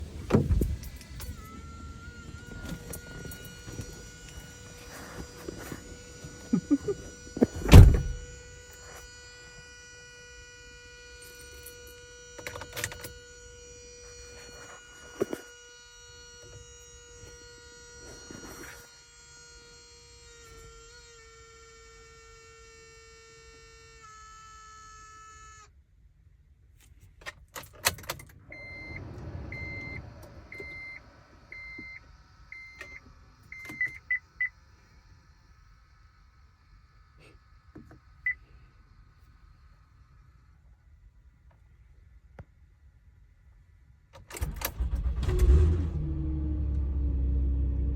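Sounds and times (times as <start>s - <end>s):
electrical whine: 0.0s - 19.5s
loud thunk: 7.6s - 8.2s.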